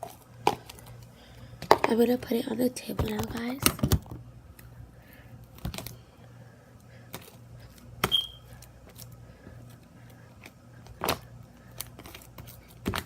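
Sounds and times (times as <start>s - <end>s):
high squeak: 8.1s - 8.5s.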